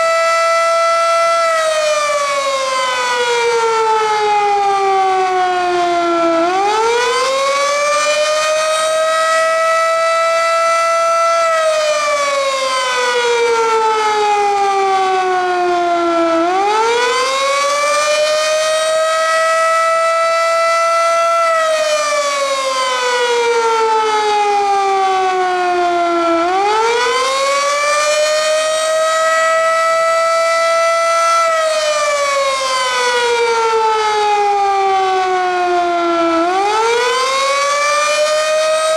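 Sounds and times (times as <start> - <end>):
warning siren wailing: 0.0 - 38.9.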